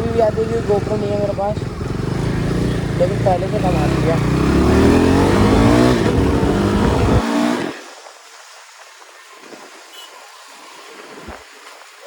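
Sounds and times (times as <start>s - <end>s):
motorcycle engine accelerating: 0.0s - 7.9s.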